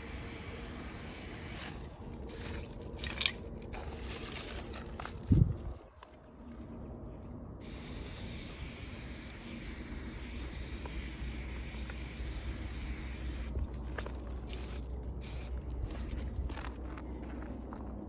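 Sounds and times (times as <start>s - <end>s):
spray paint can hissing: 0.0s - 3.3s, 7.6s - 13.6s, 14.5s - 15.5s.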